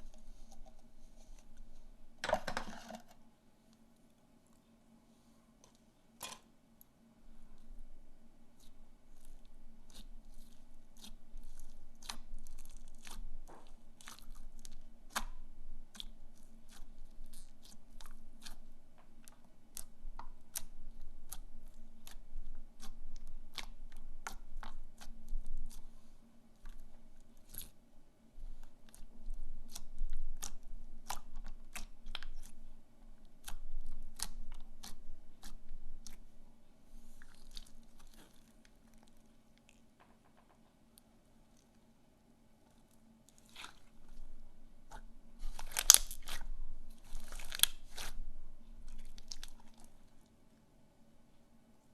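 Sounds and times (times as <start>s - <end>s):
slime crackling and popping: 8.6s - 18.6s, 33.4s - 36.2s, 44.9s - 48.2s, 48.9s - 49.9s.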